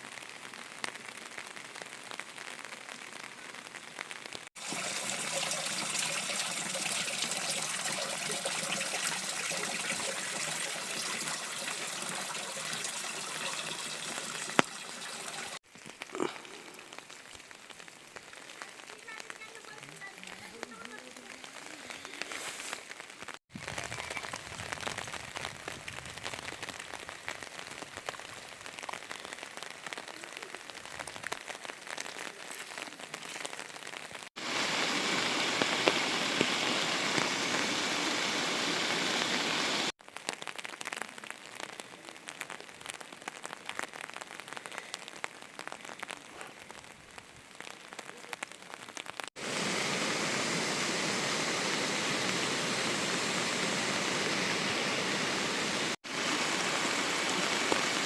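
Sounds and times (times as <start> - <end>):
raindrops pattering: 0.0 - 58.0
rush of water: 4.6 - 31.0, 32.2 - 40.0, 49.4 - 58.0.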